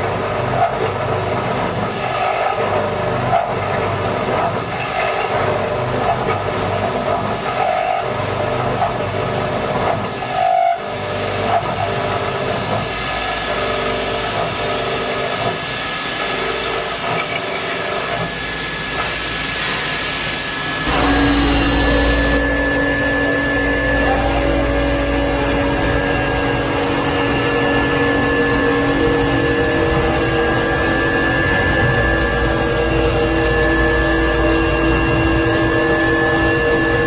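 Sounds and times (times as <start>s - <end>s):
drilling machine running: 0.0s - 37.0s.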